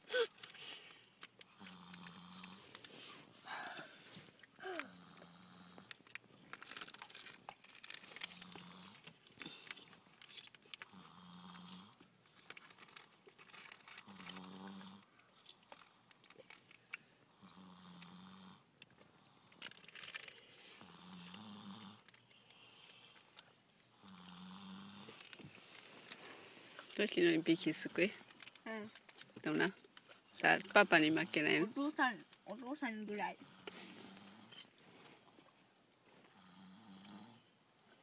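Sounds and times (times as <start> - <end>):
child snoring: 1.5 - 2.7, 3.5 - 5.9, 8.2 - 9.9, 10.8 - 12.0, 14.0 - 15.1, 17.3 - 18.7, 20.6 - 23.2, 23.9 - 25.3, 33.3 - 34.6, 36.3 - 37.5.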